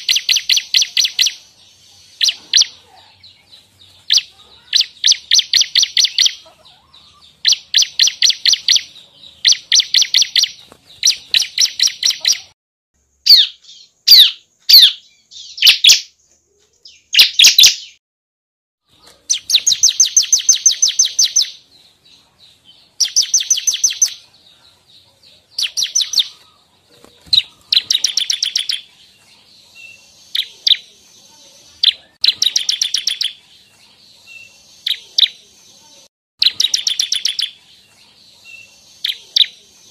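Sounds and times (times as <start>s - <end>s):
bird singing rapid trills: 0.0s - 12.5s, 22.7s - 24.2s, 27.2s - 35.4s, 36.4s - 39.9s.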